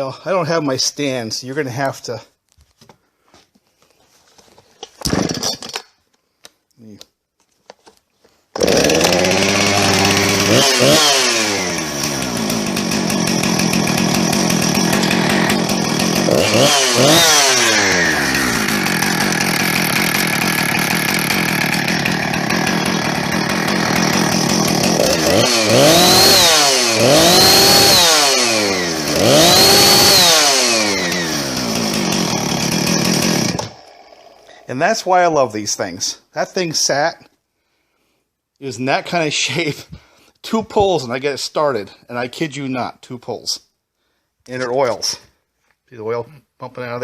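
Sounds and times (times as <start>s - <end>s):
chainsaw starting and revving: 5.1s - 5.5s, 8.5s - 35.2s.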